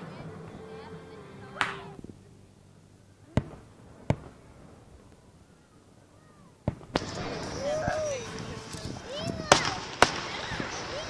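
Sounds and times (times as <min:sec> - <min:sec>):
firework crack with fizz: 0:03.2 - 0:05.7, 0:06.5 - 0:11.0
loud firework bangs: 0:03.2 - 0:11.0.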